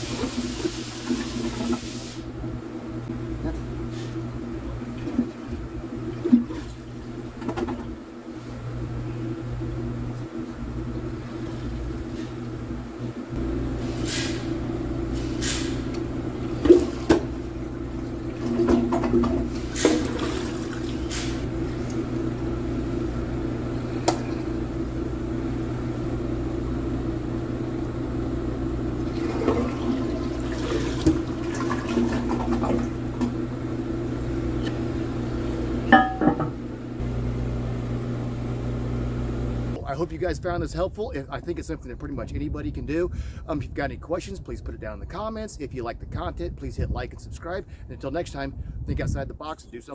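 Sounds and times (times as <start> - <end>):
toilet flushing and tank refilling: 0.0 - 26.6, 27.3 - 39.8
knocks and clinks from toilet tank: 35.9 - 36.6.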